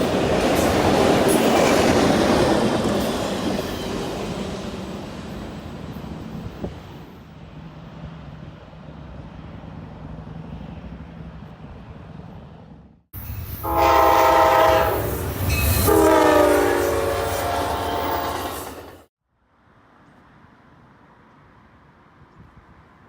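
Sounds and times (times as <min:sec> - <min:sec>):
passing train rumble: 0:00.0 - 0:19.1
locomotive air horn blasts: 0:13.6 - 0:18.6.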